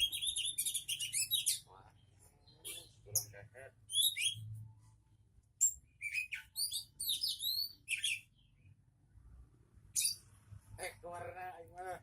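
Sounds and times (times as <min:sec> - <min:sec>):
songbird singing: 0:00.0 - 0:04.6, 0:05.6 - 0:08.9.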